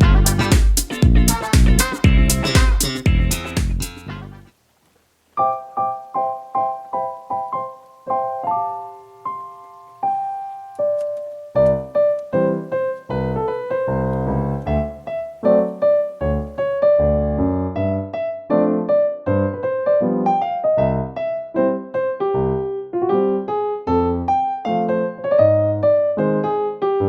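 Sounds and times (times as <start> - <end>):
bass accompaniment: 0.0 - 4.5, 11.6 - 18.2
piano melody: 0.0 - 4.5, 5.4 - 27.0.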